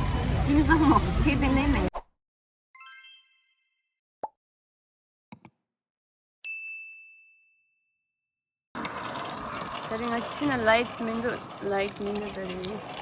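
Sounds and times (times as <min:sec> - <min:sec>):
bell-like ding: 0:06.4 - 0:08.0.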